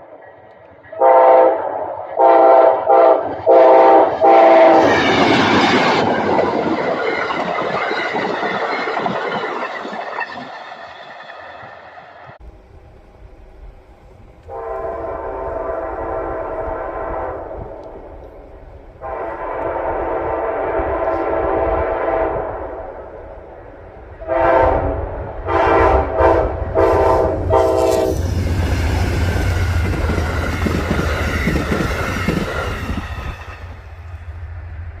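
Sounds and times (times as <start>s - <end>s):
train wheels rushing on rail: 0.0s - 35.0s
locomotive horn blasts: 0.9s - 4.9s, 14.4s - 18.0s, 19.0s - 22.9s, 24.2s - 28.2s
low engine rumble: 12.3s - 20.1s.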